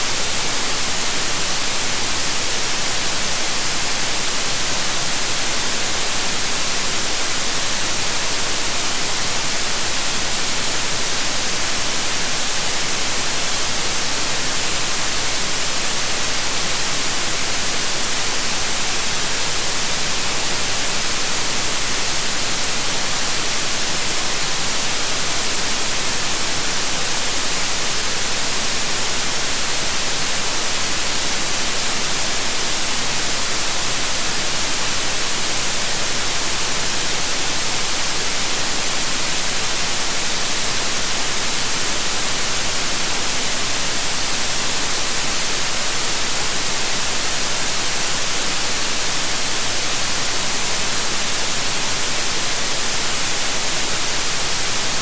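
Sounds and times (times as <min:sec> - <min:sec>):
white noise hiss: 0:00.0 - 0:55.0.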